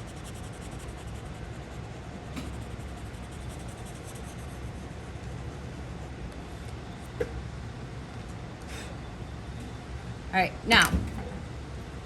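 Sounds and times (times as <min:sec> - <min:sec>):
pencil rubbing on paper: 0:00.0 - 0:06.2
background hiss and hum: 0:00.0 - 0:12.0.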